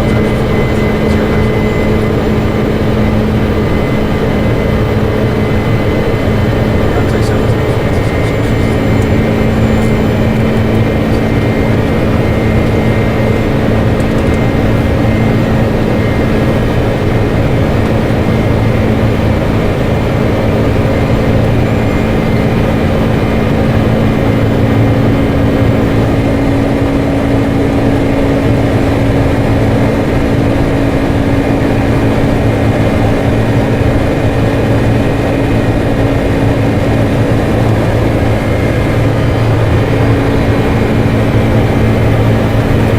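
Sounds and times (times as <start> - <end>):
engine drone: 0.0 - 42.9
low hum: 0.0 - 42.9.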